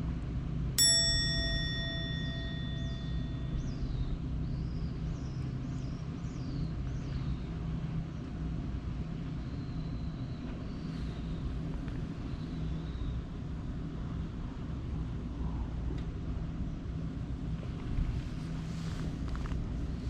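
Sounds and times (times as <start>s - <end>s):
low engine drone: 0.0s - 18.4s
faint high chirps: 0.8s - 4.2s.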